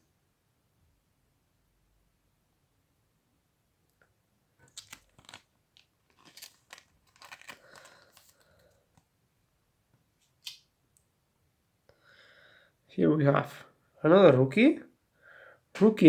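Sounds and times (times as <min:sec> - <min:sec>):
cards and packaging crinkling: 0:04.6 - 0:09.1.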